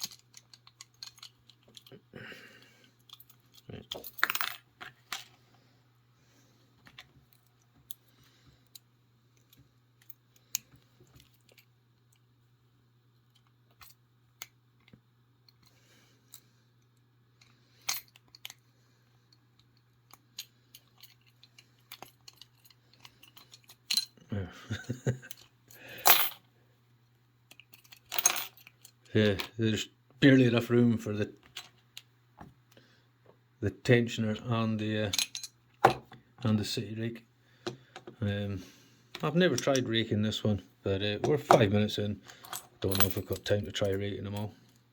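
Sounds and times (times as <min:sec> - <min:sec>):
lock pick clicking and scraping: 0:00.0 - 0:01.9
faint low hum: 0:00.0 - 0:44.9.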